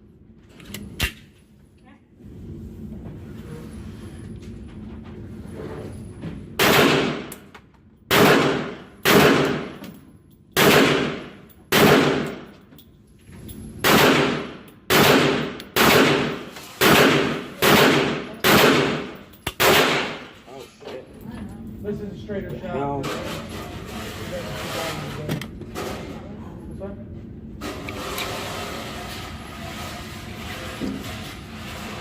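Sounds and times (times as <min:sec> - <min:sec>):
pistol shots with echo: 0:06.6 - 0:07.3, 0:08.1 - 0:09.8, 0:10.6 - 0:12.5, 0:13.8 - 0:20.3.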